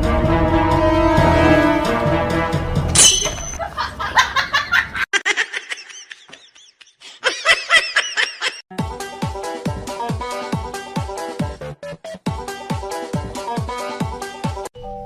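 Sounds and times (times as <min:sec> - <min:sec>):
high-pitched laughter: 0:03.4 - 0:08.6.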